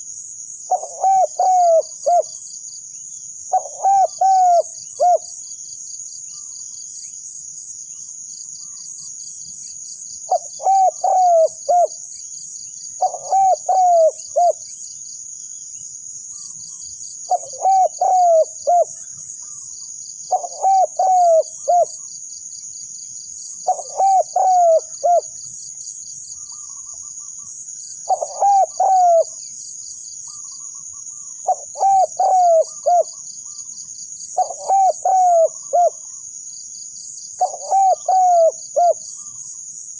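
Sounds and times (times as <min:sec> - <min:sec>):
shrill insect chorus: 0:00.0 - 0:39.9
dove cooing: 0:00.7 - 0:02.4, 0:03.5 - 0:05.3, 0:10.3 - 0:11.9, 0:13.0 - 0:14.6, 0:17.3 - 0:19.0, 0:20.3 - 0:22.0, 0:23.6 - 0:25.3, 0:28.1 - 0:29.4, 0:31.4 - 0:33.2, 0:34.4 - 0:36.2, 0:37.4 - 0:39.0.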